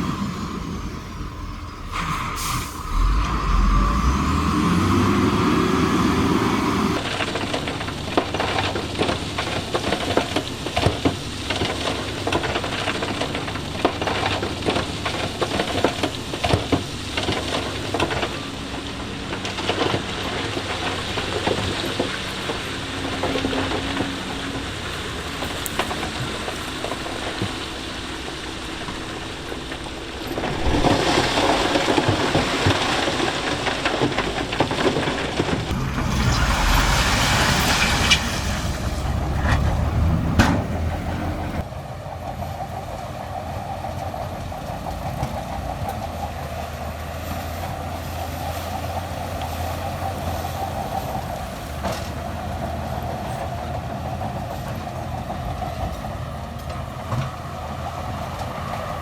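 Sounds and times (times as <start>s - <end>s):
heavy diesel engine: 0.0s - 59.0s
loose stone rattling and crunching: 7.0s - 40.8s.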